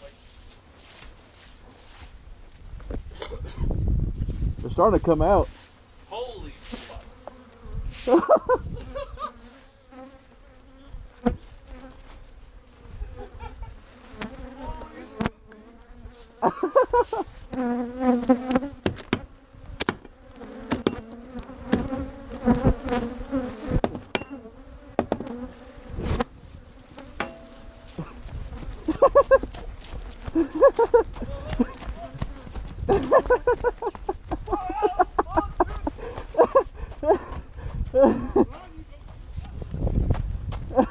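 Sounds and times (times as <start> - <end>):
bees buzzing: 5.6 - 38.5
sharp knocks: 25.0 - 25.3.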